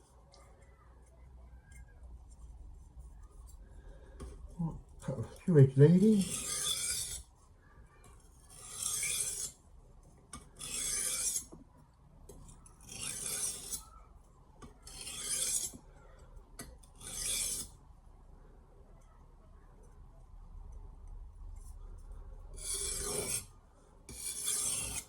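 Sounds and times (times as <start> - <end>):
knife scraping on sharpening plate: 6.2 - 7.2, 8.5 - 9.6, 10.6 - 11.5, 12.8 - 13.8, 14.9 - 15.8, 17.0 - 17.7, 22.6 - 23.5, 24.1 - 25.0.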